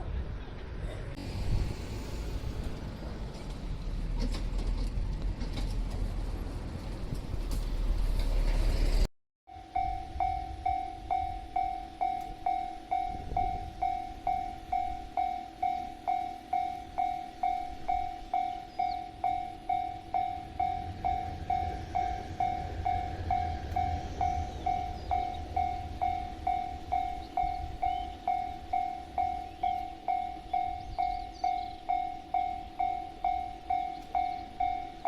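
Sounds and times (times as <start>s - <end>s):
level crossing bell dinging: 9.5s - 24.0s, 24.7s - 35.0s
low rumble: 9.8s - 35.0s.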